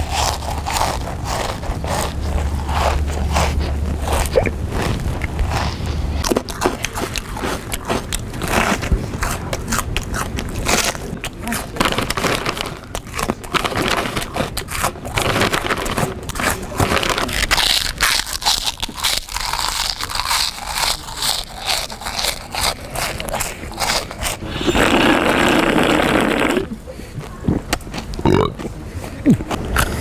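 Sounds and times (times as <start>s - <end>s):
drawn-out vocal noise: 0.0s - 9.5s, 21.3s - 30.0s
person crunching snack: 0.0s - 26.8s, 27.5s - 28.7s.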